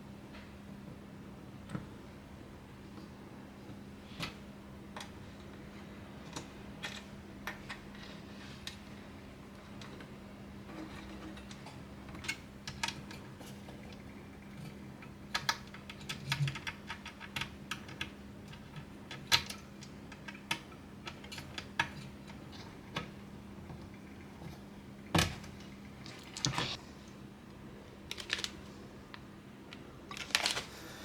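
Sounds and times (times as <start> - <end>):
faint steady hum: 0.0 - 31.0
computer parts clicking and tapping: 10.7 - 24.4.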